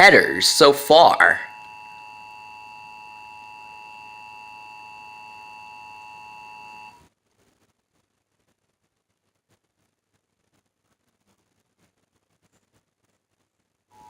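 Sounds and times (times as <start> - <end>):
steady two-tone alert tone: 0.0 - 7.0.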